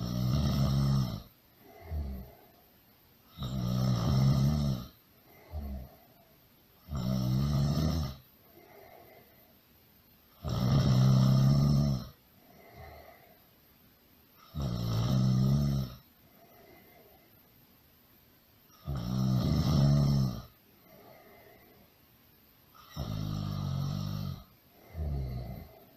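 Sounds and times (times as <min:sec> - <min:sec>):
loud snoring: 0:00.0 - 0:02.4, 0:03.3 - 0:06.0, 0:06.8 - 0:09.0, 0:10.4 - 0:13.2, 0:14.4 - 0:16.1, 0:18.7 - 0:21.5, 0:22.8 - 0:25.9
soft breath out: 0:08.4 - 0:09.6, 0:12.4 - 0:13.6, 0:16.2 - 0:17.6, 0:20.7 - 0:22.0.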